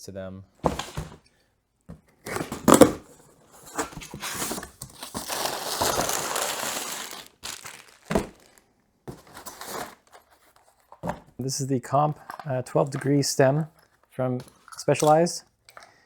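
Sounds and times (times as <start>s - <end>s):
packaging crinkling and tearing: 2.3s - 3.0s, 3.6s - 10.4s.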